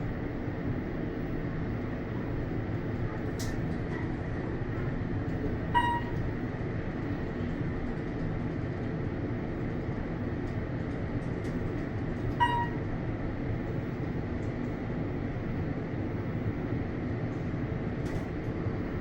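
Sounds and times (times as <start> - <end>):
elevator car rumbling: 0.0 - 19.0
short electronic beep: 5.8 - 6.2, 12.4 - 12.8.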